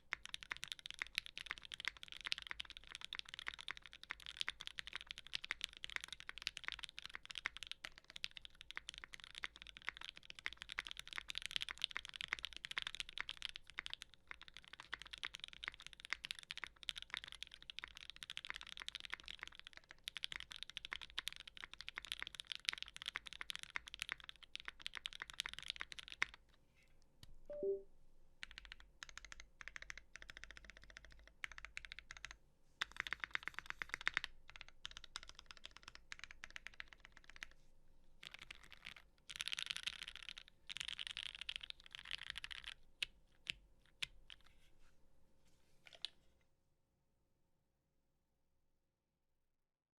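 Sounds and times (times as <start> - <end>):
short pitched tone: 27.5 - 27.9.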